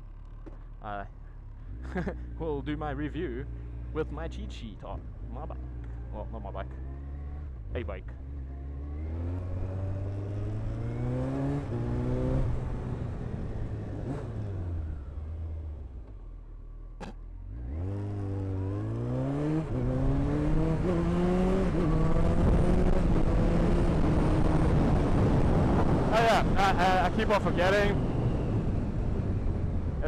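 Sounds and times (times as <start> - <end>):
motorcycle engine revving: 4.9 - 16.2, 17.0 - 30.0
wind noise: 21.9 - 30.0.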